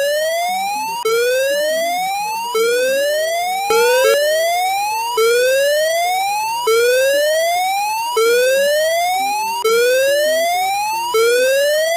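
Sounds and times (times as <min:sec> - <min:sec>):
whooping alarm tone: 0:03.7 - 0:04.3.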